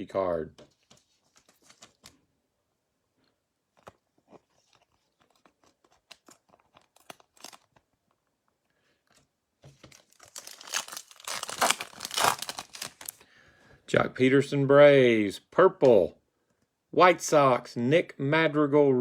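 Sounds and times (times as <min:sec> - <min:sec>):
trading cards clicking and rustling: 0:00.6 - 0:02.2
card pack wrapper tearing: 0:03.8 - 0:07.9, 0:09.9 - 0:13.2.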